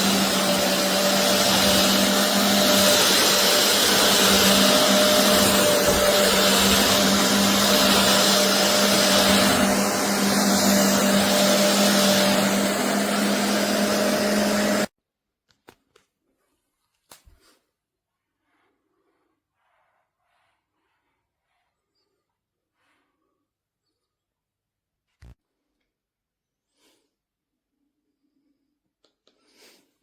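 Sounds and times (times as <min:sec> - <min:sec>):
carpet cleaner motor humming: 0:00.0 - 0:14.9.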